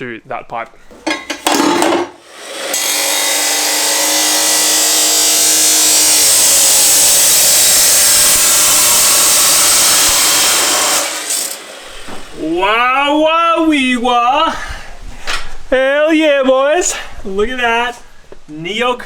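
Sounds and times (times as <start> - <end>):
power tool cutting pipe: 1.1 - 12.5.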